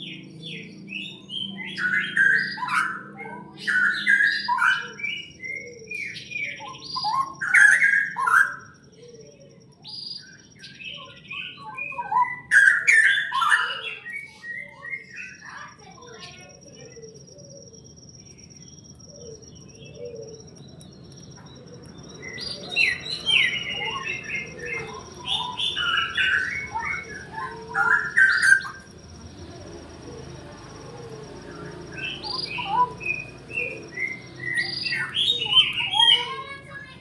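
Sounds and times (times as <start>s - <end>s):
small birds chirping: 0.0s - 37.0s
faint high-pitched tone: 22.5s - 37.0s.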